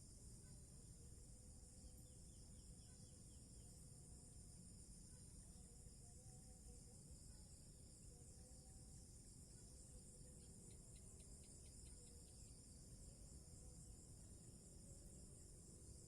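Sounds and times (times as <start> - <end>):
insects chirring: 9.3 - 16.0.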